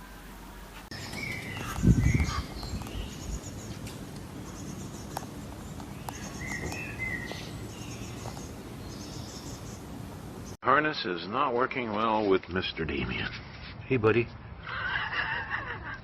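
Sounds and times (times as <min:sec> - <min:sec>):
outdoor background noise: 0:00.0 - 0:16.0
bird-like chirps: 0:00.9 - 0:10.6.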